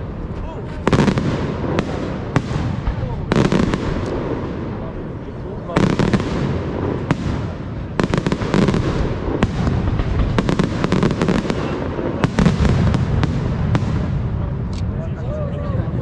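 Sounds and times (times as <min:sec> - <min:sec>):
firework shell bursts and crackling: 0:05.8 - 0:14.8
continuous low rumble: 0:08.8 - 0:16.0.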